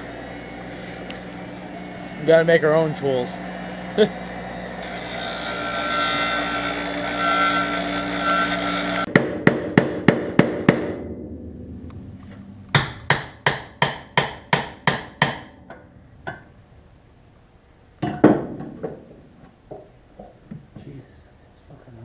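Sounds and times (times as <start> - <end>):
machine whine: 0.0 - 9.1
hammer striking metal: 12.7 - 15.6.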